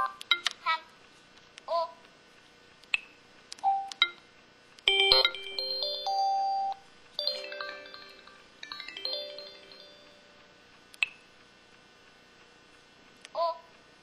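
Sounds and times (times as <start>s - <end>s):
descending chime notes: 4.9s - 10.5s
synthesized chime jingle: 4.9s - 10.5s.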